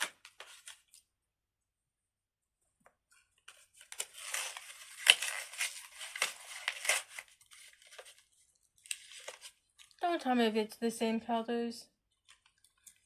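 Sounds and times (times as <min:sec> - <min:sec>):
crinkling handling noise: 0:00.0 - 0:01.1, 0:03.1 - 0:10.0, 0:12.1 - 0:13.0.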